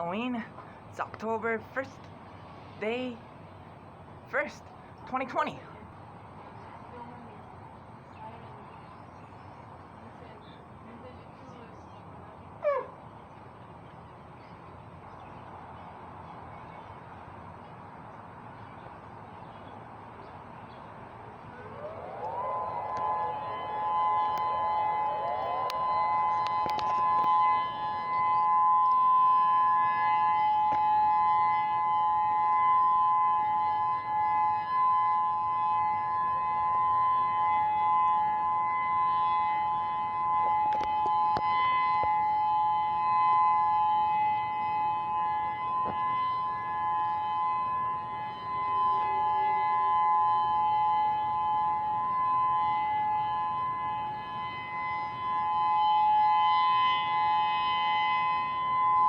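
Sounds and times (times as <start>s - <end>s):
two-note warning siren: 19.8s - 59.0s.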